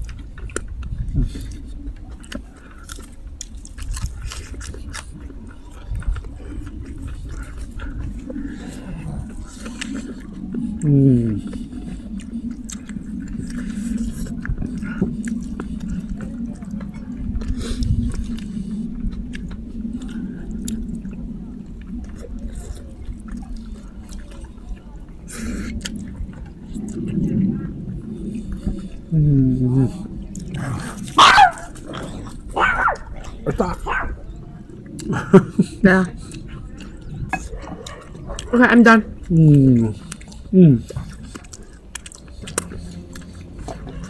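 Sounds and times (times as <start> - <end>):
close chewing with mouth clicks: 0.0 - 44.0
steady low hum: 0.0 - 44.0
wet mouth clicks and smacks: 40.0 - 43.8.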